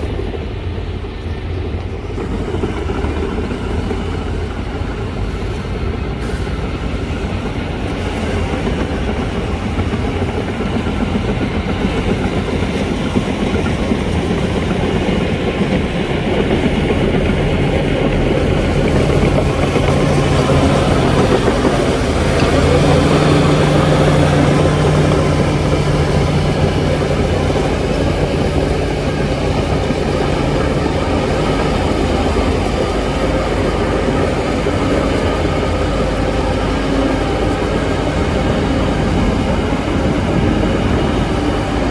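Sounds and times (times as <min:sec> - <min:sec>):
diesel machine engine under load: 0:15.8 - 0:41.9.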